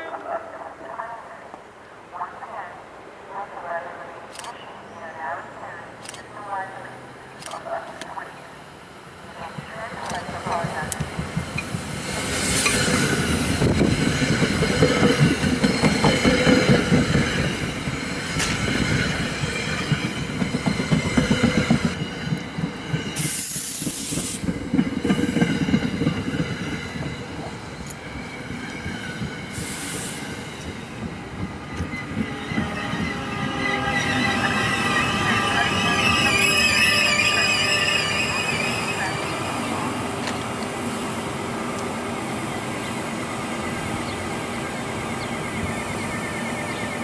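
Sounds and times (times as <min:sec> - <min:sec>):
rushing hiss of passing train: 0:08.2 - 0:47.0
train wheels clattering on rails: 0:09.2 - 0:33.2
high-pitched squeal: 0:31.9 - 0:39.8.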